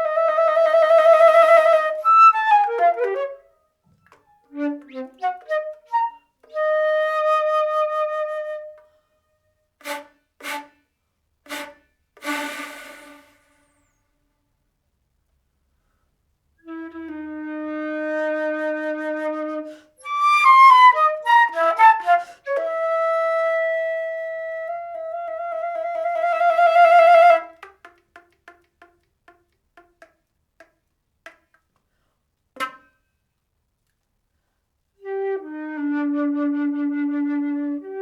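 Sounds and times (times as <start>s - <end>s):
solo flute playing: 0.0s - 3.6s, 4.3s - 9.2s, 11.5s - 14.0s, 16.6s - 27.7s, 35.0s - 38.0s.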